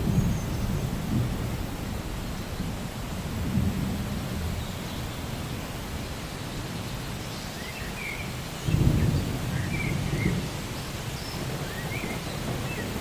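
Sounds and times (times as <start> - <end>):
low roll of thunder: 0.0 - 5.1, 8.6 - 13.0
steady rain: 0.0 - 13.0.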